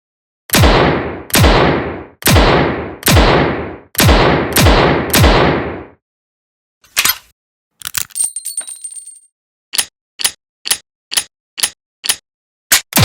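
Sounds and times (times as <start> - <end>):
revolver gunshots: 0.5 - 6.0.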